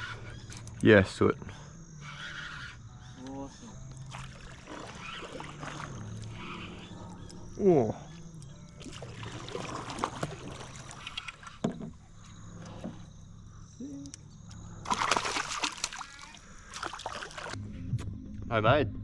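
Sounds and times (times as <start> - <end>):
water splashing beside a canoe: 4.0 - 6.6, 8.8 - 12.0, 14.8 - 17.6
fish thrashing at the surface: 4.1 - 6.3, 8.8 - 11.4, 14.8 - 17.6.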